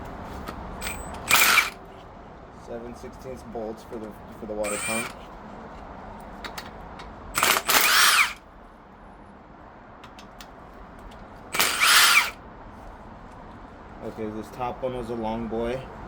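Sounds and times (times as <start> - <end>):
power tool motor running: 0.8 - 1.8, 4.6 - 5.2, 7.4 - 8.4, 11.6 - 12.4.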